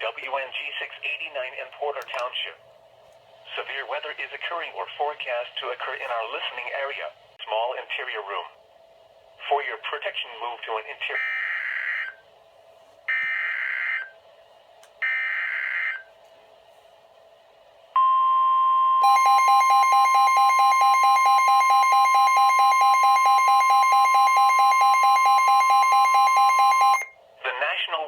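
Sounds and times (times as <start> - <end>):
steady warning alarm tone: 13.1 - 14.2, 15.0 - 16.1, 18.0 - 27.2
digital data tone bursts: 19.0 - 27.1
rapidly pulsing alert beep: 19.0 - 27.1.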